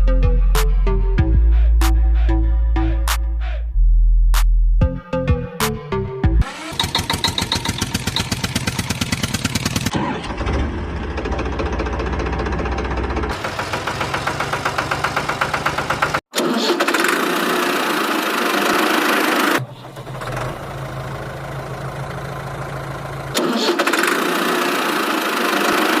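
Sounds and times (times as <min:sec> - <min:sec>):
tractor engine chugging: 0:06.5 - 0:17.8, 0:18.4 - 0:26.0.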